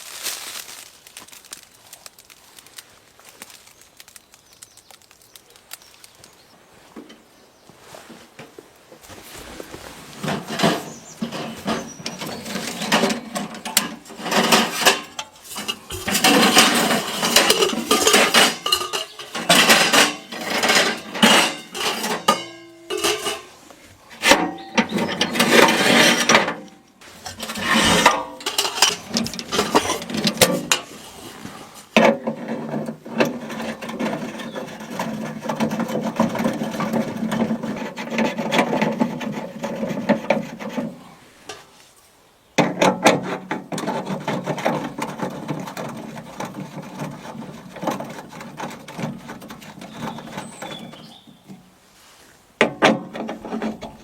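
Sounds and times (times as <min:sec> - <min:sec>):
scraping and rubbing: 0:00.0 - 0:06.2, 0:09.0 - 0:41.9, 0:42.6 - 0:54.0.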